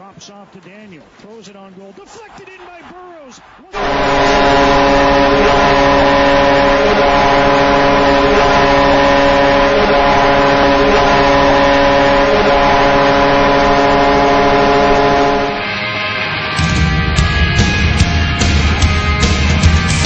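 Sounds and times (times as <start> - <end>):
crowd cheering: 0.0 - 19.0
arena goal horn blast: 3.8 - 15.8.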